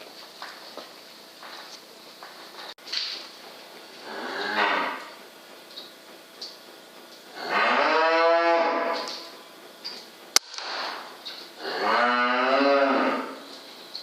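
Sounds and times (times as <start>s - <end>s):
cattle mooing: 4.0s - 5.2s, 7.3s - 9.3s, 11.6s - 13.4s
air rifle shot: 10.4s - 11.1s.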